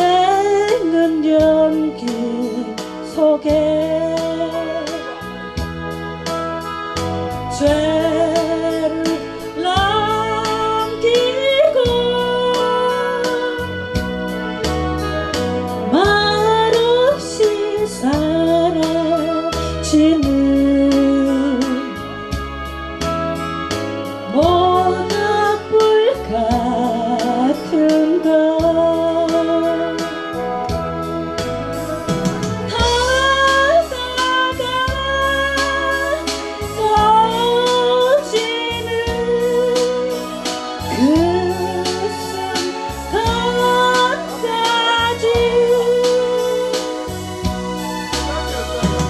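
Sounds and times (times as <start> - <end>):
person singing: 0.0 - 5.9, 6.6 - 22.3, 24.2 - 47.2
instrumental accompaniment with beat: 0.0 - 49.0
keyboard chords: 0.0 - 49.0
steady beat: 28.7 - 33.7, 47.2 - 49.0.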